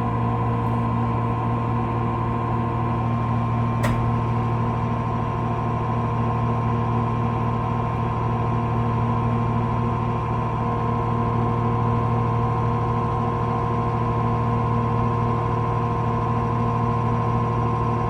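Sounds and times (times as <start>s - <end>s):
electric train droning hum: 0.0s - 18.0s
short click: 3.8s - 4.5s.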